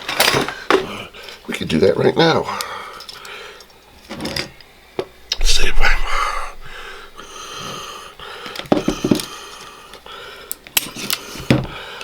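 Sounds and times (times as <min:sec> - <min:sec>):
breathy sound: 0:05.4 - 0:09.6.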